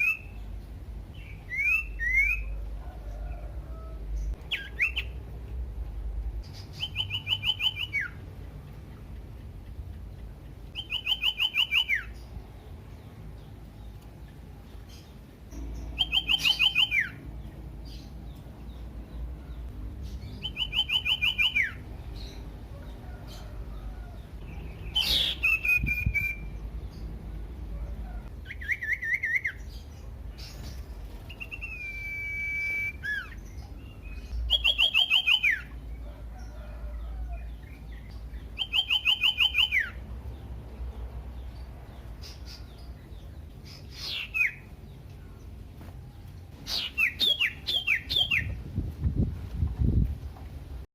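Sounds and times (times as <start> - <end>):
bird trilling: 6.6 - 8.2, 10.7 - 12.3, 15.6 - 17.3, 20.4 - 22.4, 24.8 - 26.6, 34.5 - 35.7, 38.6 - 40.0
bird whistling swooping notes: 24.9 - 26.6, 31.3 - 33.4.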